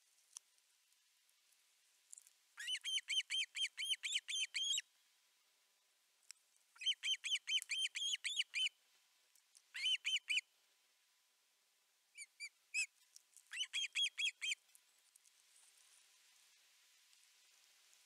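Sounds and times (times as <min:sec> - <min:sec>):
bird whistled chirps: 0:02.6 - 0:04.8, 0:06.8 - 0:08.7, 0:09.8 - 0:10.4, 0:12.2 - 0:12.9, 0:13.5 - 0:14.6.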